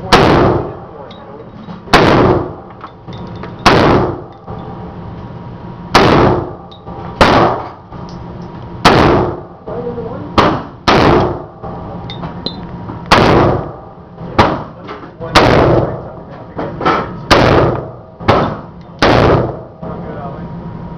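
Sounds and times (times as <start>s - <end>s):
rifle shots with echo: 0.1s - 0.8s, 1.9s - 2.7s, 3.6s - 4.3s, 5.9s - 6.6s, 7.2s - 7.8s, 8.8s - 9.6s, 10.4s - 11.6s, 13.1s - 13.8s, 14.4s - 16.0s, 17.3s - 19.8s.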